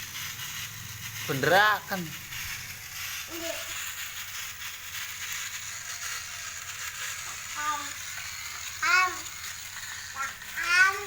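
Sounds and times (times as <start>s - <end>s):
steady hiss: 0.0s - 11.0s
child high-pitched vocal sounds: 3.2s - 3.8s, 7.5s - 8.0s, 8.8s - 9.3s, 10.1s - 11.0s.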